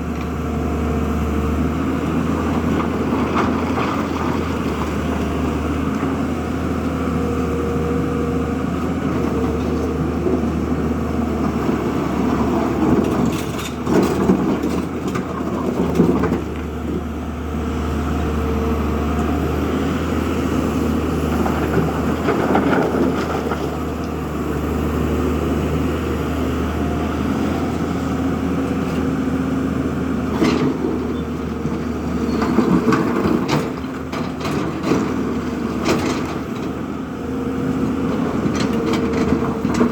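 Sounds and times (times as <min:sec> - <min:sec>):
backhoe diesel engine hum: 0:00.0 - 0:39.9.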